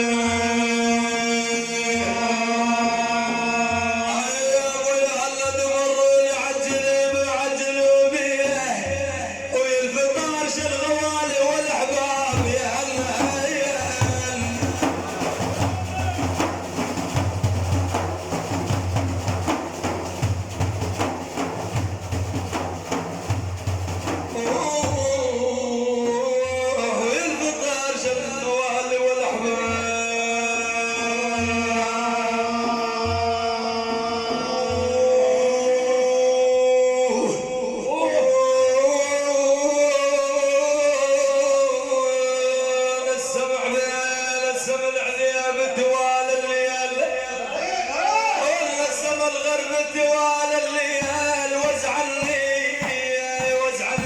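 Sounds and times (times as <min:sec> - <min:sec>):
busy drumming: 0:08.4 - 0:28.4, 0:29.3 - 0:36.1, 0:48.4 - 0:54.0.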